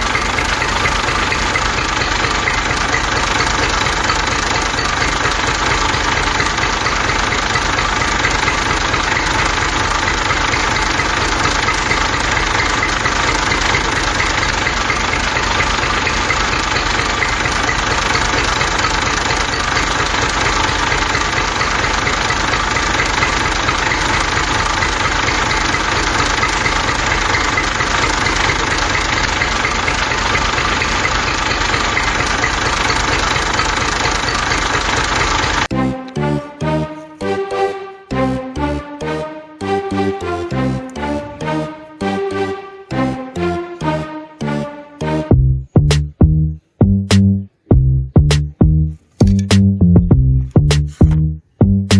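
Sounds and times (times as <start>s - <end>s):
engine idling with knocking: 0.0s - 35.7s.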